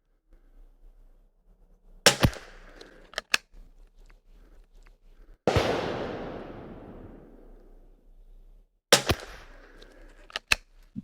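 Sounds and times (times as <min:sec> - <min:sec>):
rifle shots: 0:02.1 - 0:02.8, 0:05.5 - 0:07.8, 0:08.9 - 0:09.8
rifle metallic clicks: 0:02.1 - 0:04.2, 0:09.0 - 0:11.0
loud gunshot report ringing: 0:05.5 - 0:07.5.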